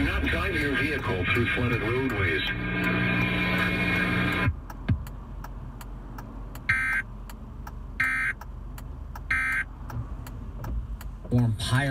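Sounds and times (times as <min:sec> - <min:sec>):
harsh digital data tone bursts: 0:06.7 - 0:07.0.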